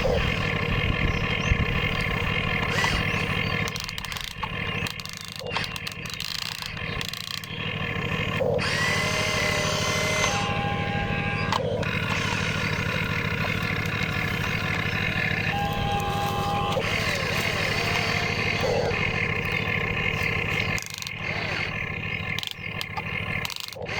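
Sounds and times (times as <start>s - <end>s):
electric motors whirring: 0.0s - 23.9s
held whistling tones: 8.6s - 22.8s.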